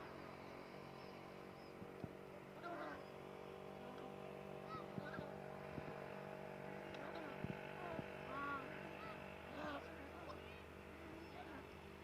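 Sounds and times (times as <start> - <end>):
steady low hum: 0.0 - 12.0
peafowl honking calls: 2.6 - 3.1, 4.6 - 5.4.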